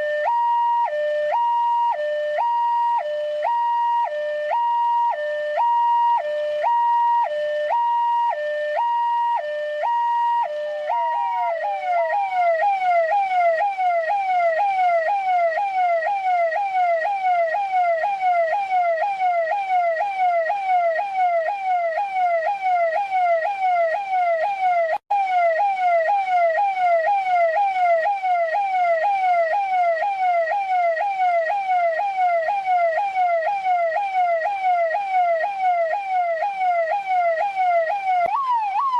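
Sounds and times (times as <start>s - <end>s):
police siren wailing and yelping: 0.0s - 38.9s.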